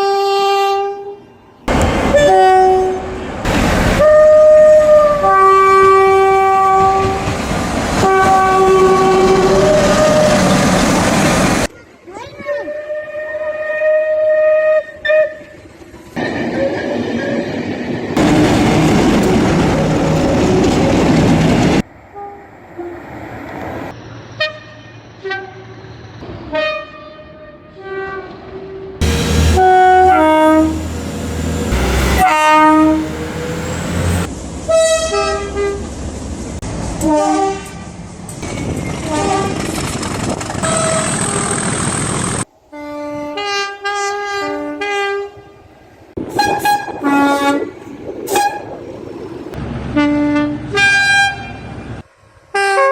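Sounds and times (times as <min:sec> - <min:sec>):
train horn blasts: 0:00.0 - 0:03.2, 0:04.0 - 0:07.3, 0:08.0 - 0:10.5, 0:12.7 - 0:15.6, 0:26.5 - 0:35.8, 0:37.0 - 0:37.9, 0:39.0 - 0:39.6, 0:40.6 - 0:41.4, 0:42.7 - 0:45.6, 0:46.2 - 0:47.7, 0:50.0 - 0:51.8, 0:52.5 - 0:52.9
train rushing past: 0:01.6 - 0:11.7, 0:15.6 - 0:26.6, 0:29.0 - 0:43.8.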